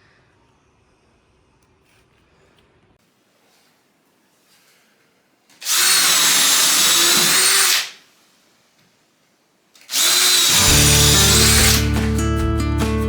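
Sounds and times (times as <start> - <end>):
power tool whining: 5.6 - 8.0, 9.8 - 12.1
guitar music: 10.5 - 13.0.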